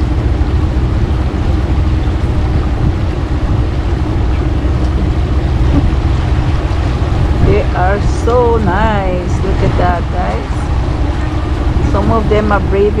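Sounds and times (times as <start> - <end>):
boat motor rumbling: 0.0 - 13.0
water noise: 0.0 - 13.0.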